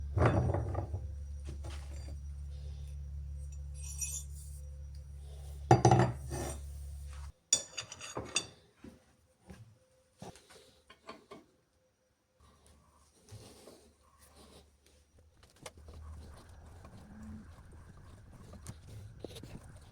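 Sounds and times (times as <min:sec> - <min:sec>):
steady low hum: 0:00.0 - 0:07.4, 0:13.4 - 0:19.9
small metal parts clinking: 0:03.5 - 0:04.5.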